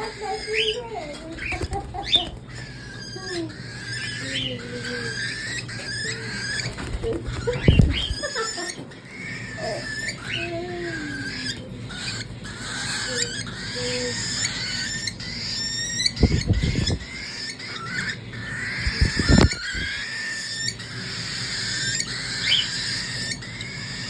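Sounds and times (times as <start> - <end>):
baby cockatiels chirping: 0.0 - 24.0
low fluttering bursts: 18.8 - 20.0.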